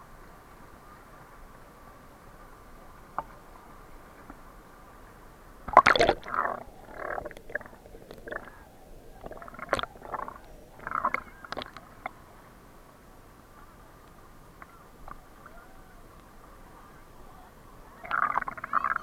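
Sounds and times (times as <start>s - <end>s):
water splashing and gurgling: 5.6s - 12.3s, 18.0s - 19.0s.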